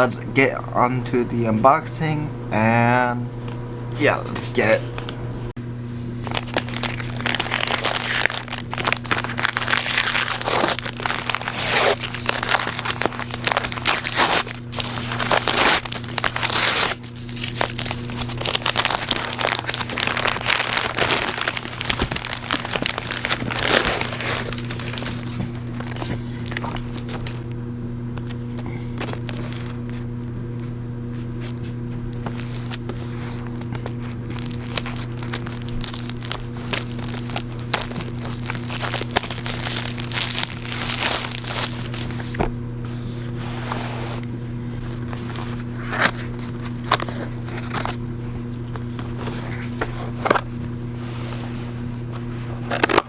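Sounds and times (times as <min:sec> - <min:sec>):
steady low hum: 0:00.0 - 0:53.0
wrapping crinkling: 0:06.2 - 0:27.5, 0:28.2 - 0:30.1, 0:31.0 - 0:44.2, 0:44.8 - 0:48.0.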